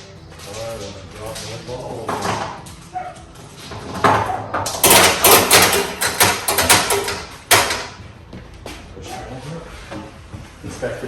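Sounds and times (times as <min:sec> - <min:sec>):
steel pinballs clacking: 0:03.9 - 0:08.0.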